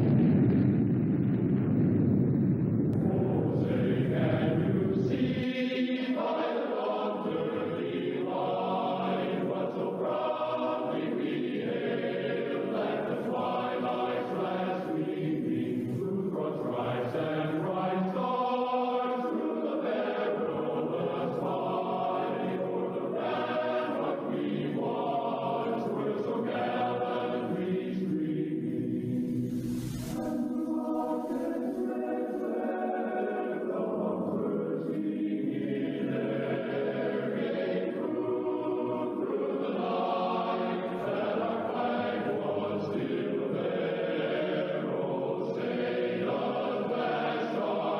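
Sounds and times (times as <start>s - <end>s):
deep rumble: 0.0s - 5.4s
choir singing an anthem: 3.0s - 47.9s.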